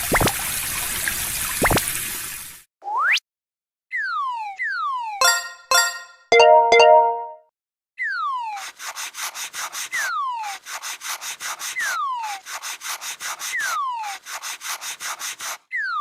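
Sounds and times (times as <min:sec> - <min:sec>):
rapid scratchy rasping: 0:08.7 - 0:15.6
falling cartoon whistle: 0:15.7 - 0:16.0.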